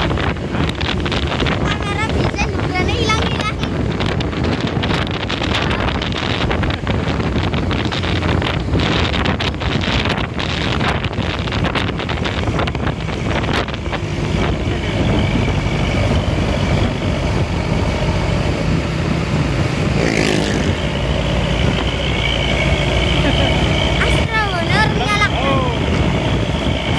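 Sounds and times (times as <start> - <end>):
bus engine and road noise: 0.0 - 26.9
wind buffeting microphone: 0.0 - 26.9
rising sweep: 3.5 - 26.9.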